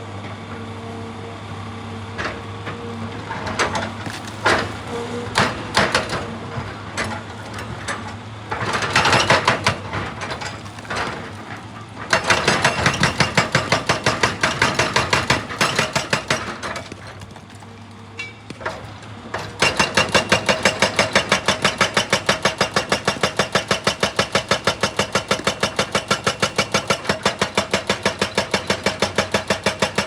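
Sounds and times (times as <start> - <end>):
excavator engine running: 0.0 - 30.0
hydraulic rock hammer knocking: 2.1 - 30.0.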